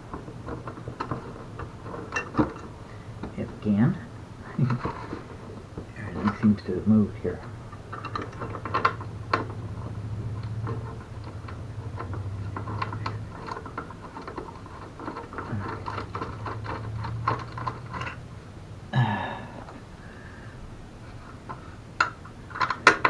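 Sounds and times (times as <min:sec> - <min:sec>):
low steady hum: 0:00.0 - 0:23.0
hand tools clicking on bolts: 0:06.0 - 0:18.3, 0:21.3 - 0:23.0.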